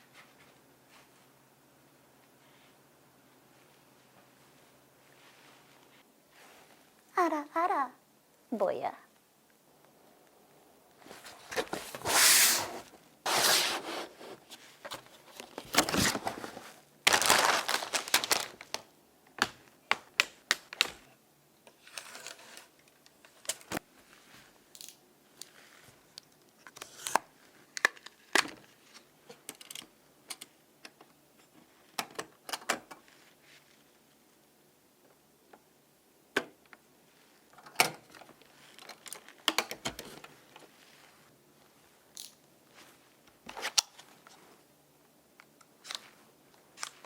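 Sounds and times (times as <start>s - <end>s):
packaging tearing and crinkling: 15.4s - 18.8s.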